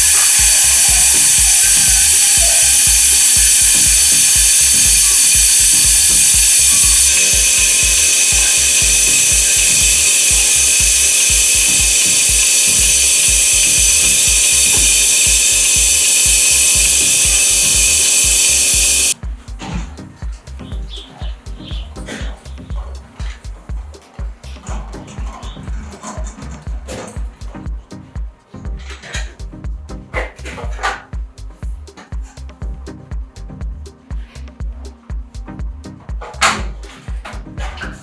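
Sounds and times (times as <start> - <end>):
loud machine motor pulsing: 0.0 - 19.2.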